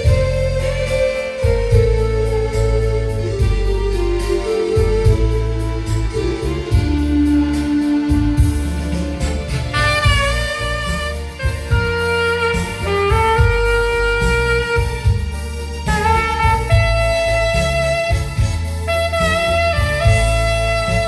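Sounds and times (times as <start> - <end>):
alto saxophone melody: 0.0 - 21.0
keyboard accompaniment: 0.0 - 21.0
low bass line: 0.0 - 21.0.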